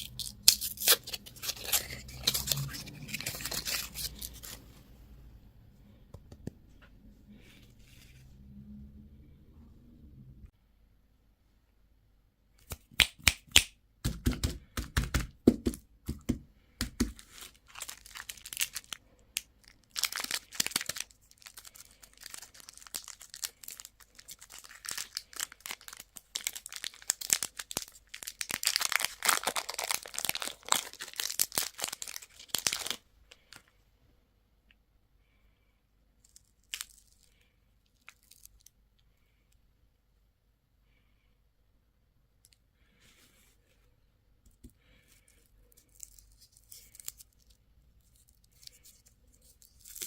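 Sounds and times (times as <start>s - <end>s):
plastic wrapper crinkling and tearing: 0.0s - 4.6s, 16.9s - 33.7s, 36.2s - 38.8s, 45.2s - 50.0s.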